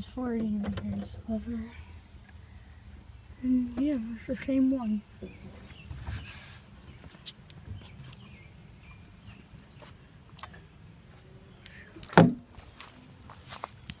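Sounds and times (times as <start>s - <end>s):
faint background noise: 0.0s - 14.0s
loud short thump: 12.1s - 12.5s.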